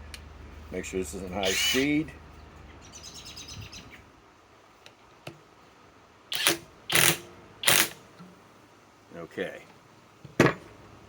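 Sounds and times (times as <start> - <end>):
impact wrench bursts: 6.3 - 8.0.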